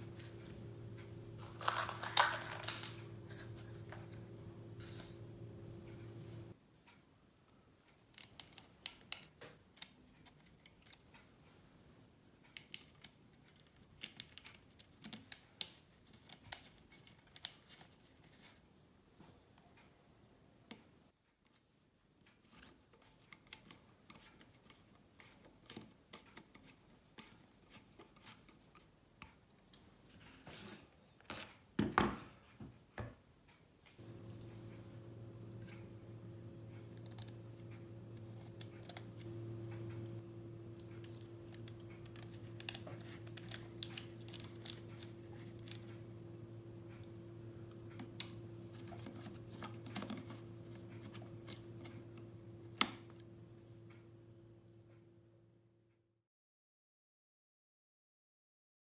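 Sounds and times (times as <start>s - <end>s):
hands handling tool parts: 0.0s - 6.5s, 34.0s - 53.2s.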